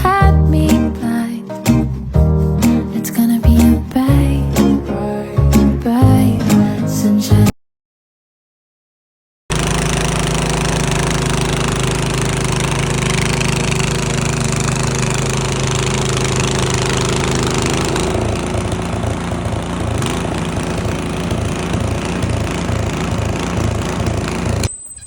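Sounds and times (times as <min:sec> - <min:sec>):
snowblower engine running: 0:09.5 - 0:24.7.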